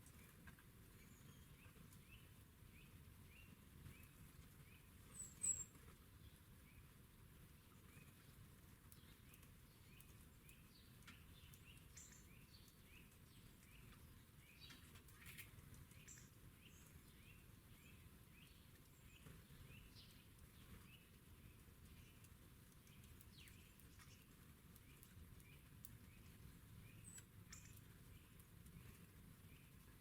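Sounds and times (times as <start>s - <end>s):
small birds chirping: 0.0s - 30.0s.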